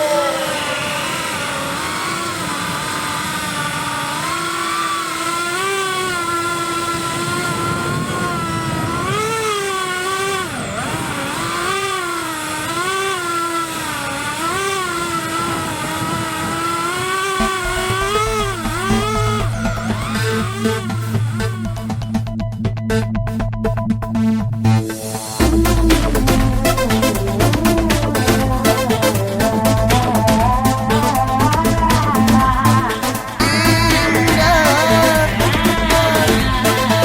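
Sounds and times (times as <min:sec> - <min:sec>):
drone motors whining: 0:00.0 - 0:37.0
music: 0:17.4 - 0:37.0.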